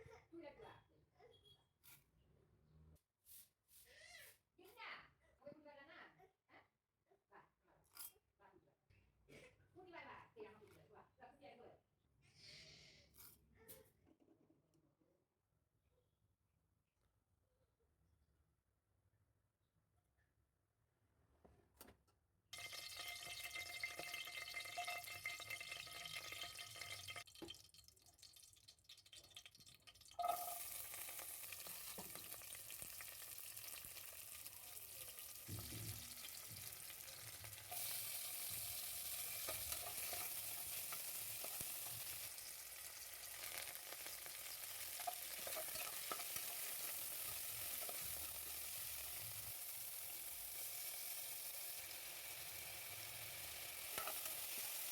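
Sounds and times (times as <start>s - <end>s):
food sizzling in hot oil: 22.6s - 54.9s.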